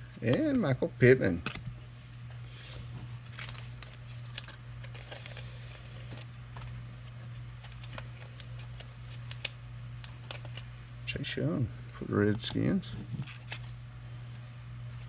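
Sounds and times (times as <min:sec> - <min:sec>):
steady low hum: 0:00.0 - 0:15.0
cards clicking and rustling: 0:03.2 - 0:10.7, 0:12.2 - 0:13.8.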